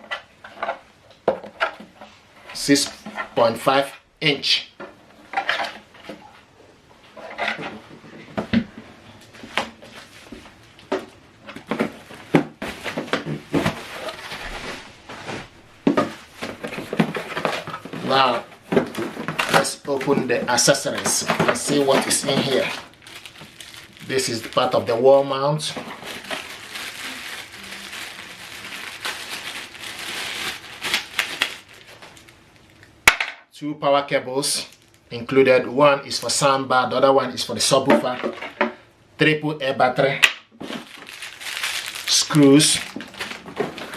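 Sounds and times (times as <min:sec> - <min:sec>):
plastic packaging crinkling: 0:07.1 - 0:33.0, 0:34.6 - 0:35.1, 0:40.6 - 0:43.9
knocks taps and rustles of boxes: 0:09.4 - 0:14.6.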